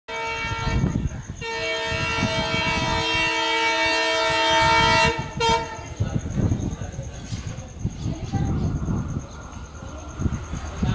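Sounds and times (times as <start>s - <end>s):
locomotive horn blasts: 0.1s - 5.9s
low rumble of locomotive engine: 0.1s - 10.9s.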